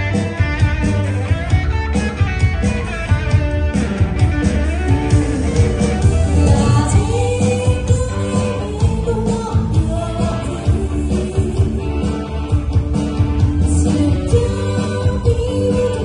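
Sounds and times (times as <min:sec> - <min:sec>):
pop-rock band playing: 0:00.0 - 0:16.0
person singing: 0:06.0 - 0:12.5, 0:13.6 - 0:16.0.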